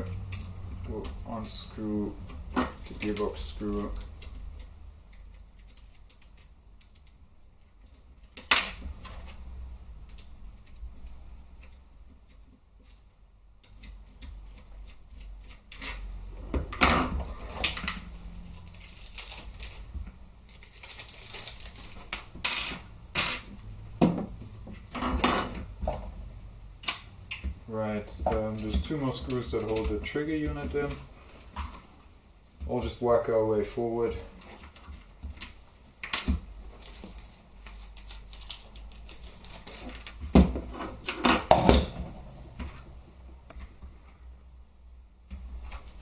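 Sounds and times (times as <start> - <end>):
small metal parts clinking: 38.0 - 40.1.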